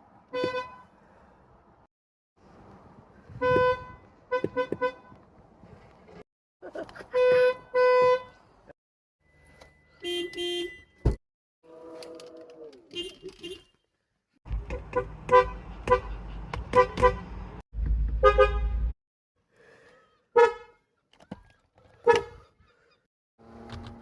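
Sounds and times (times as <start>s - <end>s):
car horn honking: 0.3s - 0.8s, 3.3s - 5.2s, 7.1s - 8.4s, 10.0s - 11.0s, 12.9s - 13.8s, 14.6s - 16.1s, 16.7s - 17.4s, 18.2s - 18.9s, 20.4s - 20.8s.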